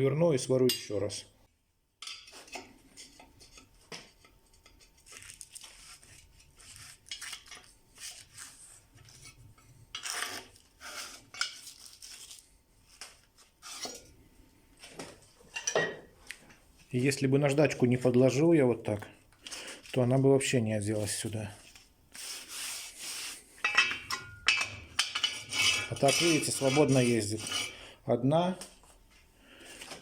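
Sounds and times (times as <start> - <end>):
metallic clinks and knocks: 23.6 - 25.4.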